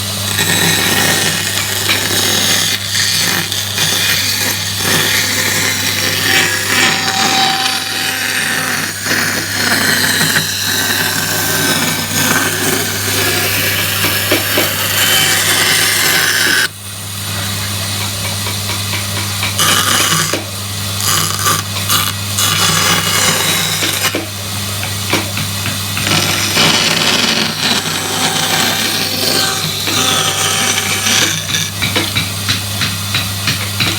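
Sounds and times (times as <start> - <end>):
wood cutting and rubbing: 0.0 - 16.8, 18.0 - 33.9
power tool motor running: 25.0 - 33.9.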